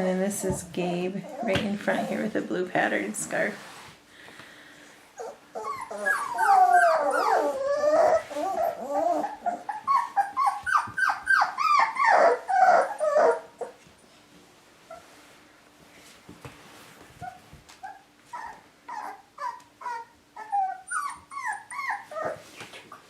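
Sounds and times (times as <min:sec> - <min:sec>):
puppies whining and yipping: 0:00.5 - 0:01.6, 0:05.2 - 0:13.9, 0:17.2 - 0:23.0.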